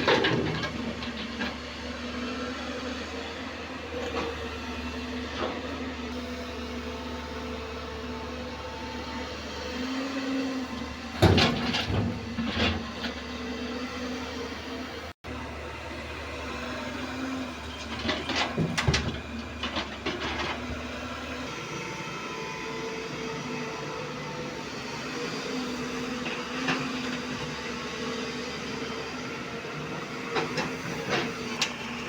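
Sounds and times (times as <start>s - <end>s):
excavator diesel engine running: 0.0s - 32.0s
metallic clanks and knocks: 11.2s - 12.9s.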